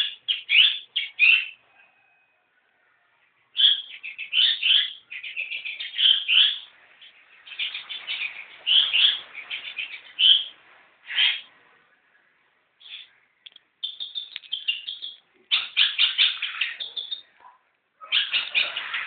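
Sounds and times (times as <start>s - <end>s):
bird chirping and chattering: 0.0s - 1.6s, 3.5s - 11.5s, 12.8s - 17.4s, 18.0s - 19.0s.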